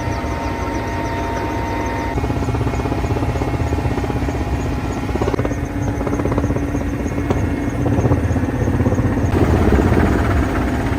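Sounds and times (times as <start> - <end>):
helicopter rotor beat: 0.0 - 10.9.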